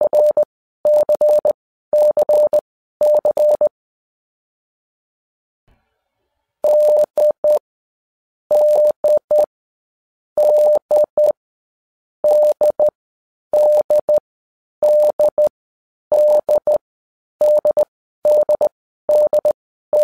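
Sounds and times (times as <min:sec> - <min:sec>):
morse code beeping: 0:00.0 - 0:03.7, 0:08.5 - 0:09.5, 0:10.4 - 0:11.4, 0:12.3 - 0:12.9, 0:13.6 - 0:14.2, 0:14.8 - 0:15.5, 0:16.1 - 0:16.8, 0:17.4 - 0:20.0.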